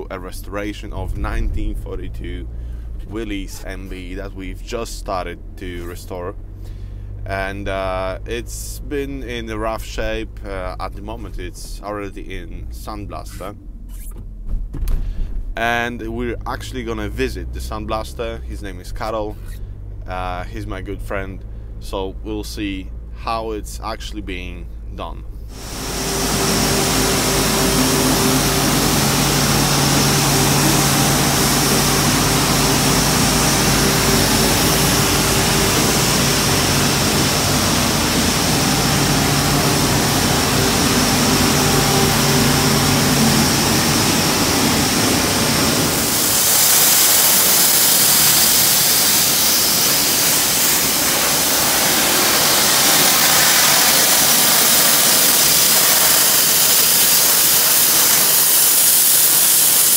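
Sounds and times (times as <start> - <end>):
engine-like drone: 0.0 - 13.4, 24.7 - 59.9
abrasive blast hissing: 25.5 - 59.9.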